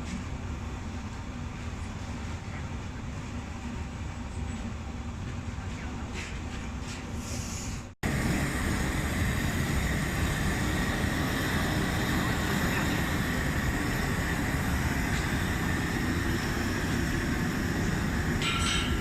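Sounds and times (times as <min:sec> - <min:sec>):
furnace blower rushing noise: 0:07.2 - 0:19.0
faint high whine: 0:08.0 - 0:19.0.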